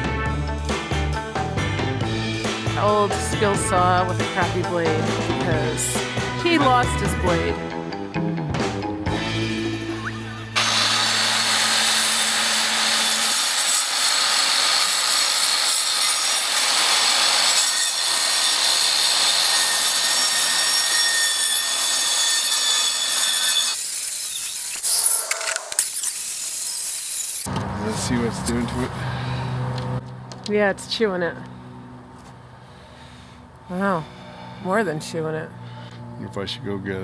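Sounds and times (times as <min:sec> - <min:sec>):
circular saw cutting board: 0:09.1 - 0:27.7.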